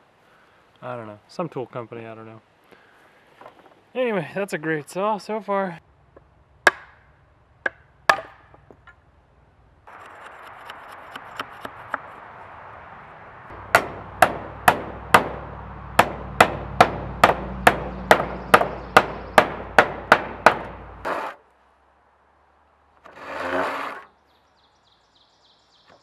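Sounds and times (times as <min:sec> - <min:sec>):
hammer driving nails into wood: 0:16.0 - 0:21.3.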